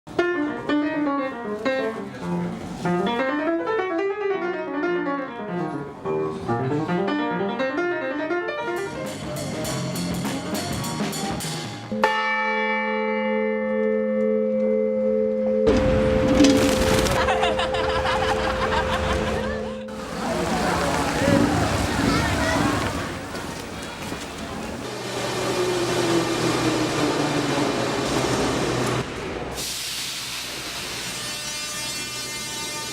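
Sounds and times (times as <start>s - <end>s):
church bells ringing in runs: 11.9s - 22.8s.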